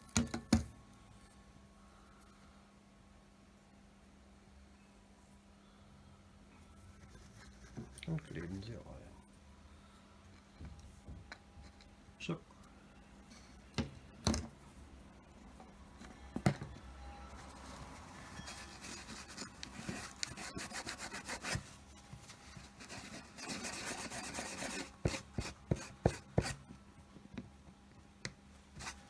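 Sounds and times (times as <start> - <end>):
hands rubbing and scraping wood: 17.4 - 26.6, 28.8 - 29.0.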